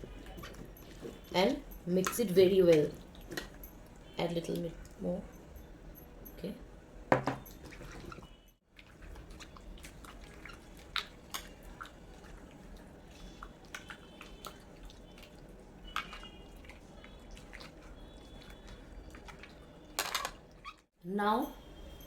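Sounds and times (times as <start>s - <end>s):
chicken squelching in wet paste: 8.7s - 19.6s.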